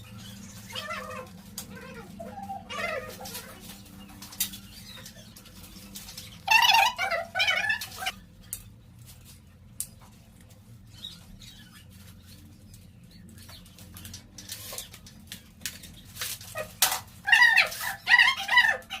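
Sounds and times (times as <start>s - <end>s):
dog yelping: 0.7s - 3.6s, 6.5s - 8.2s, 17.3s - 19.0s.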